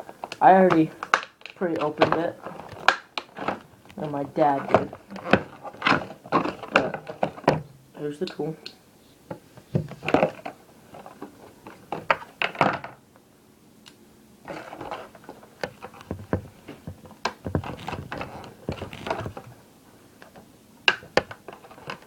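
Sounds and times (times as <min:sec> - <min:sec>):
packaging rustling: 0:00.0 - 0:07.6, 0:14.5 - 0:19.6.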